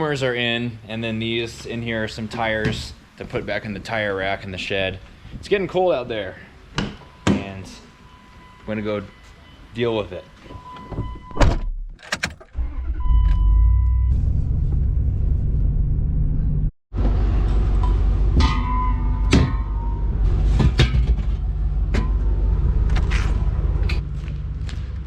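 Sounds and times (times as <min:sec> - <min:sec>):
truck engine rumbling: 0:10.6 - 0:25.0
knocks and clanks: 0:17.8 - 0:25.0.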